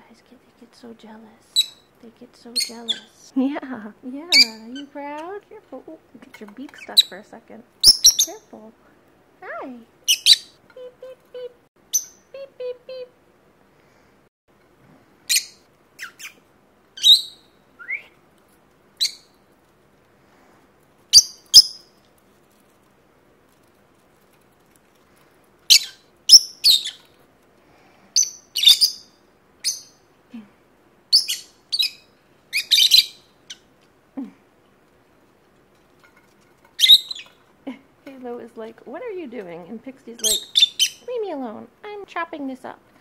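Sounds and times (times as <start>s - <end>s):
lovebirds chirping: 0.0s - 13.1s, 15.2s - 18.3s, 18.9s - 19.7s, 21.0s - 22.1s, 25.0s - 34.4s, 36.7s - 42.7s.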